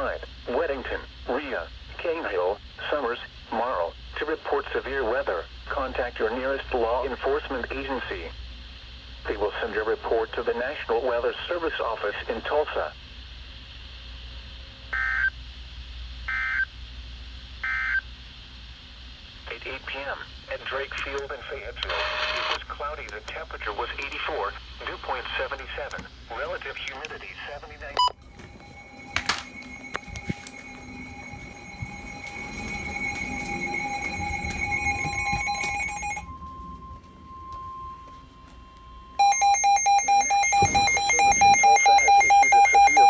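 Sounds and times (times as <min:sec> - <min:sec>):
electronic alarm tone: 0:28.0 - 0:43.0.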